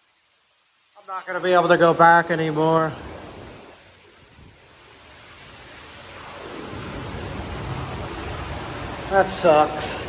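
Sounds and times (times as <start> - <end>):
rushing water: 0.2 - 10.0
low rumble: 3.0 - 10.0.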